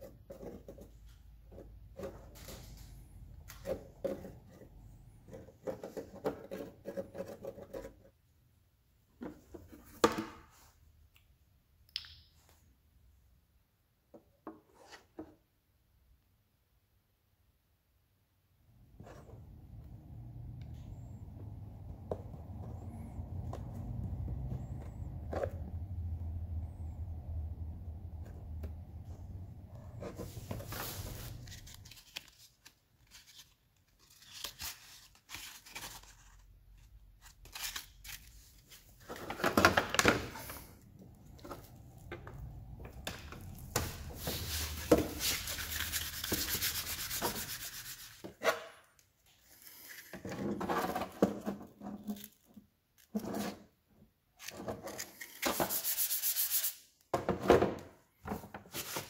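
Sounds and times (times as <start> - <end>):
sandpaper rubbing: 30.2 - 32.0, 43.9 - 48.2, 55.5 - 56.9.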